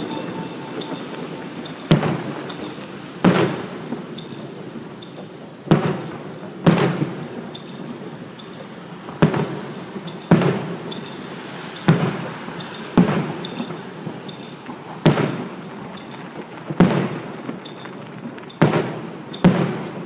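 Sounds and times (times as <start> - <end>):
fireworks bangs with echo: 0.0 - 20.0.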